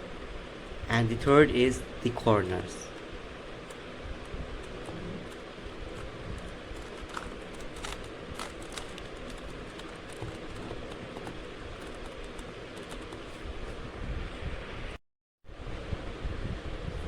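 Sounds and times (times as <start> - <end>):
puzzle cube plastic clicks: 3.7 - 13.8.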